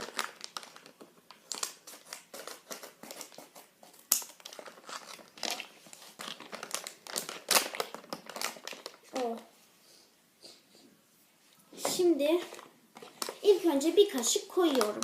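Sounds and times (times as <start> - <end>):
plastic packet crinkling: 0.0 - 3.4, 4.0 - 9.5, 12.3 - 15.0.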